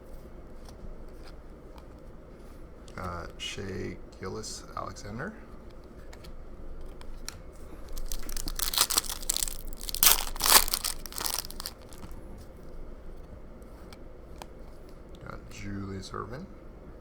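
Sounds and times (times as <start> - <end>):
wrapper tearing and crinkling: 7.9 - 12.2.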